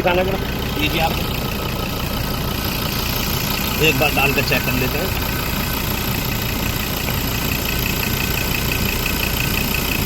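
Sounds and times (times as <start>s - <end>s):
diesel engine idling: 0.0s - 10.0s.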